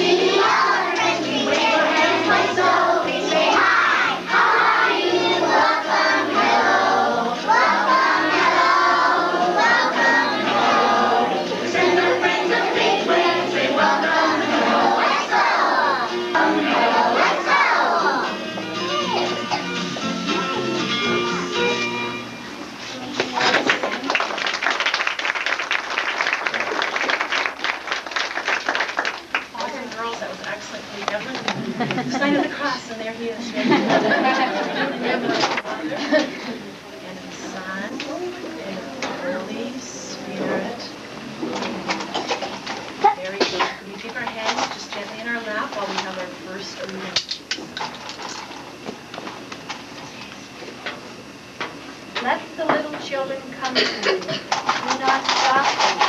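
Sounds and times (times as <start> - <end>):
children singing: 0.0 - 18.4
crowd applauding: 23.3 - 29.6
voices: 29.5 - 42.4, 43.0 - 47.3, 52.2 - 56.0.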